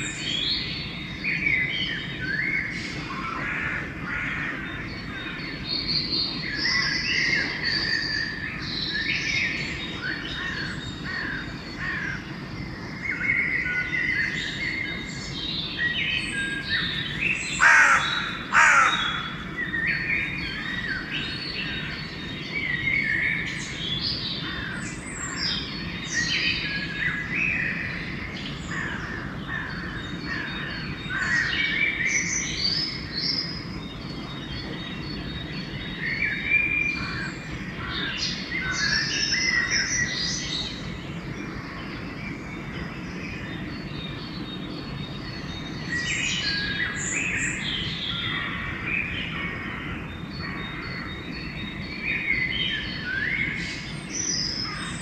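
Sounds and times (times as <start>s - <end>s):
songbirds chirping: 0.0s - 55.0s
crow cawing: 17.6s - 19.4s.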